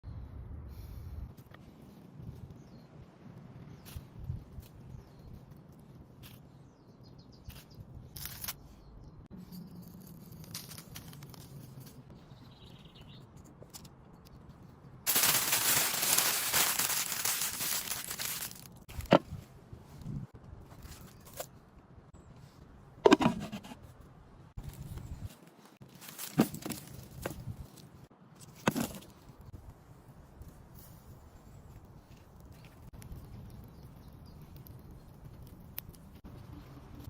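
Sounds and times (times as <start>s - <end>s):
loud steady hiss: 15.1s - 18.0s.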